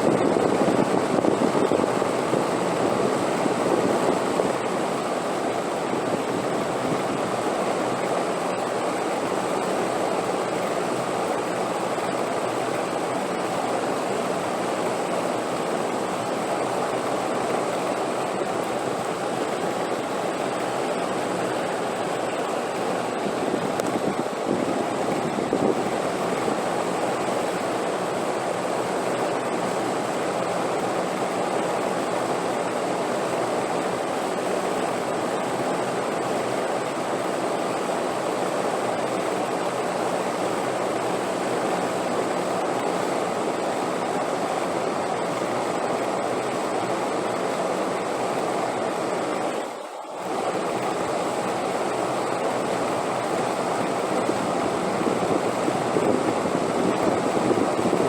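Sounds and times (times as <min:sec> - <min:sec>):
rushing wind: 0:00.0 - 0:08.0, 0:19.6 - 0:27.6, 0:50.3 - 0:58.0.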